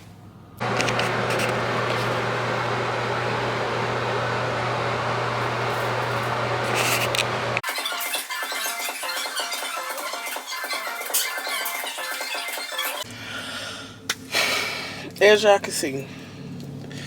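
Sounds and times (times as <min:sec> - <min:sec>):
fan rushing noise with hum: 0:00.0 - 0:07.6.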